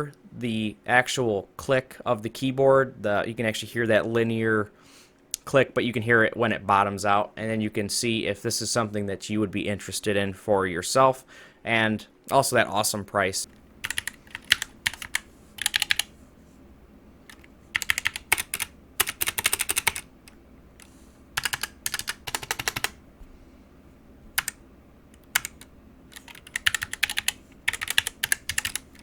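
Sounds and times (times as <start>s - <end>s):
keyboard typing: 13.5s - 16.1s, 17.3s - 23.0s, 24.3s - 29.0s.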